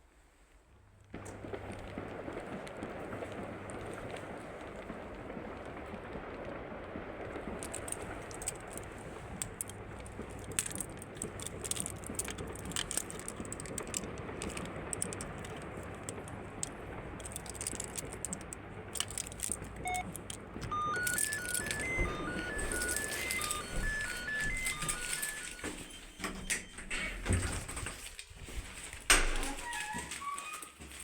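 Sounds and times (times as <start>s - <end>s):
lift car running noise: 6.1s - 27.8s
clicks rattles and squeaks: 7.6s - 31.0s.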